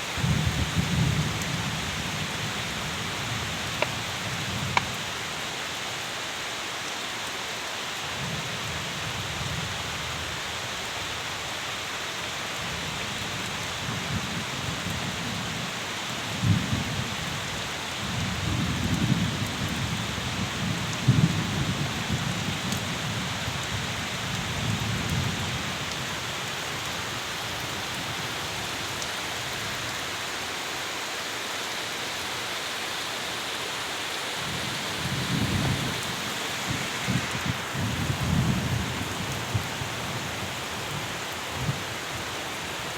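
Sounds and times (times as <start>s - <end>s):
heavy rain falling: 0.0s - 42.9s.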